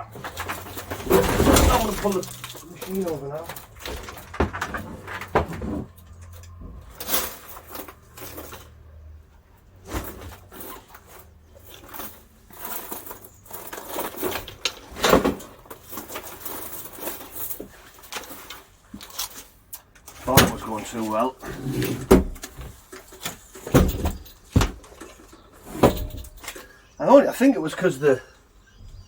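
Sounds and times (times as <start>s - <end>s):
machine knocks and clatters: 0.1s - 8.1s.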